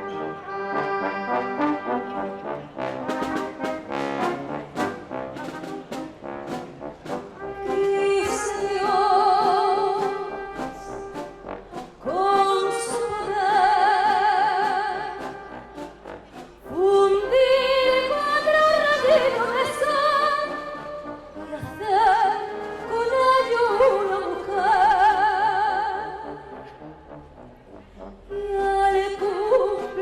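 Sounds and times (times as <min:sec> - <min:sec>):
symphony orchestra: 0:00.0 - 0:30.0
operatic singing: 0:07.4 - 0:15.9, 0:16.6 - 0:26.6.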